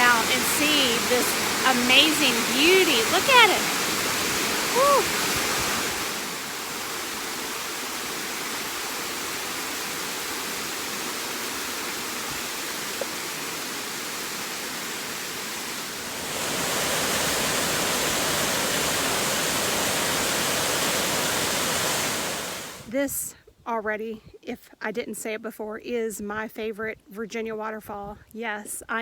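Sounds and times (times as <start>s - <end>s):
waterfall rushing: 0.0s - 22.9s.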